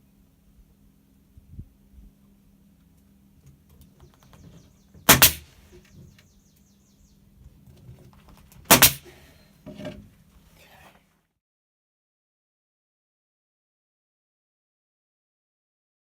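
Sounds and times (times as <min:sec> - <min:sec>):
loud sharp bangs: 0:05.0 - 0:05.8, 0:08.7 - 0:09.1.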